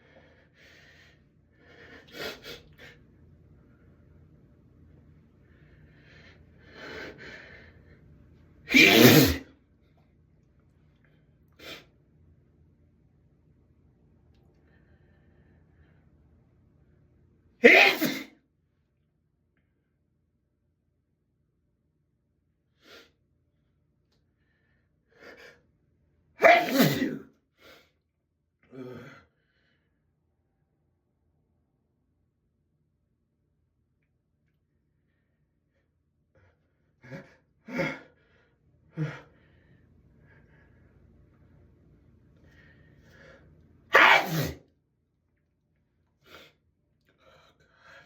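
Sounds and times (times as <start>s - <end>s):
person sneezing loudly: 8.7s - 9.5s, 17.6s - 18.3s, 26.4s - 27.3s, 43.9s - 44.6s.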